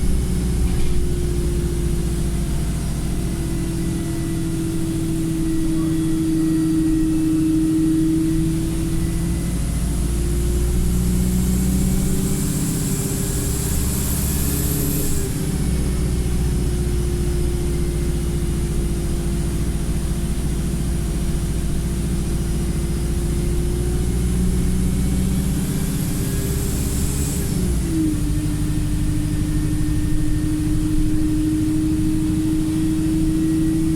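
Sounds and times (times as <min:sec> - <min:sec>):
bus engine running: 0:00.0 - 0:33.9
steady whine: 0:27.0 - 0:33.9.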